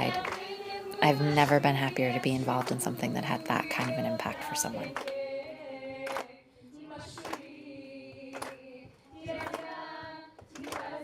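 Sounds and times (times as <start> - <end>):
sharp handclaps: 0.0 - 0.6, 3.7 - 4.0, 4.9 - 5.3, 6.0 - 6.4, 7.0 - 11.0
voices singing together: 0.0 - 11.0.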